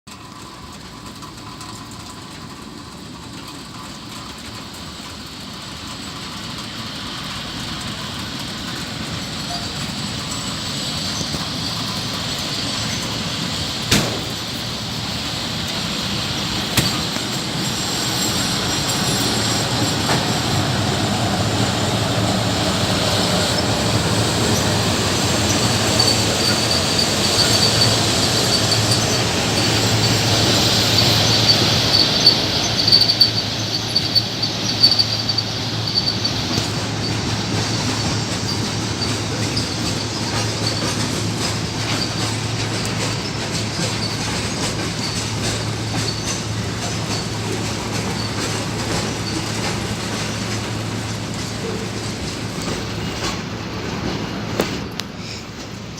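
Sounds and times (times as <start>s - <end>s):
train wheels rumbling on rail: 0.1s - 55.9s
high-pitched wheel squeal: 9.2s - 14.5s, 16.6s - 49.8s
sharp knocks: 13.9s - 14.5s.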